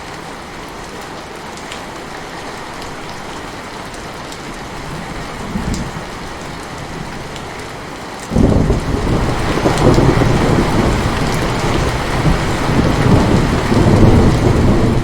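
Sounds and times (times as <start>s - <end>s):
heavy rain falling: 0.0s - 15.0s
rolling thunder rumble: 4.8s - 7.4s, 8.3s - 15.0s.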